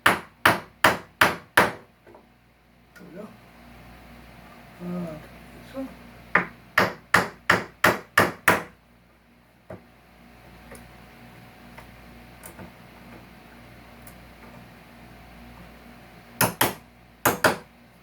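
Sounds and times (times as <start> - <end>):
hammer striking a fastener: 16.4 - 17.6.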